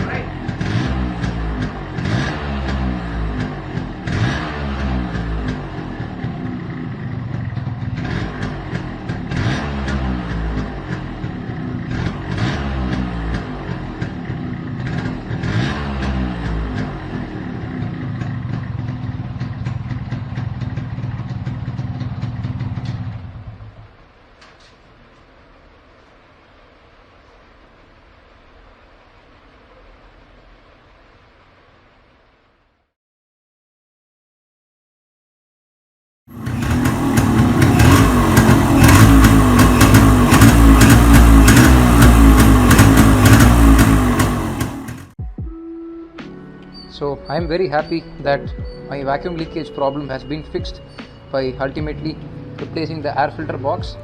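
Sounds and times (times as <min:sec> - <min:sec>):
two-stroke engine idling: 0:00.0 - 0:23.9, 0:36.3 - 0:45.2.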